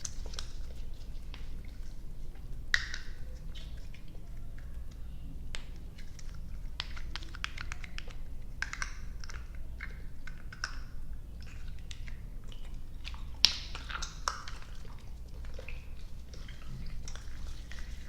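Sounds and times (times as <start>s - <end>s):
chewing sticky candy: 0.0s - 18.0s.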